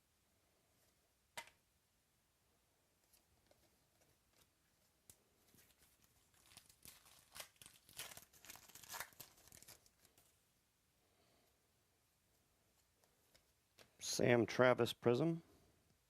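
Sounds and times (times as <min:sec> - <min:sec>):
foil wrapper tearing and crinkling: 0:05.6 - 0:10.3.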